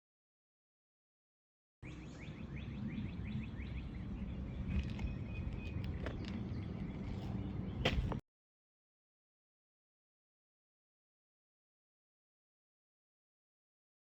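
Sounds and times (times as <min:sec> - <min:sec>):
low outdoor rumble: 0:01.9 - 0:08.2.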